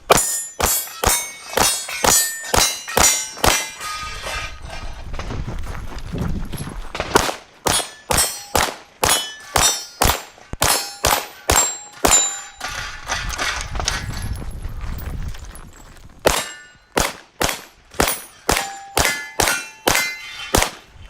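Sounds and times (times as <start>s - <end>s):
steel plate clanging: 0.0s - 5.0s, 7.7s - 14.5s, 16.3s - 17.0s, 17.6s - 20.9s
pistol shots: 0.1s - 3.8s, 7.0s - 12.4s, 16.2s - 20.9s.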